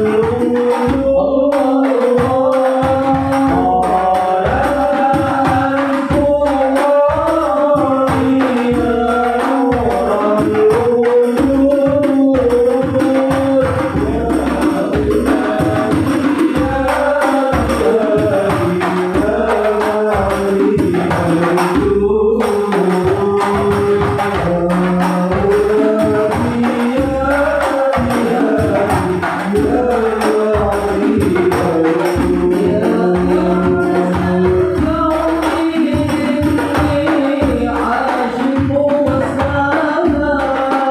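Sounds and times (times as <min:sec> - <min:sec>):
hand-struck frame drums: 0:00.0 - 0:40.9
person singing devotional melody: 0:00.0 - 0:40.9.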